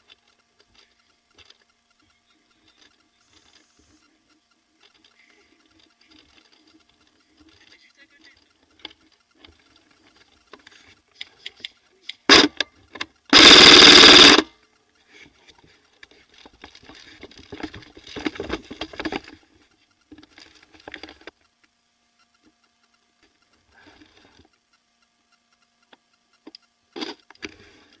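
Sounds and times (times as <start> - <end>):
airsoft gun full-auto burst: 12.3 - 12.6, 13.3 - 14.5
airsoft gun single shots: 12.3 - 12.6.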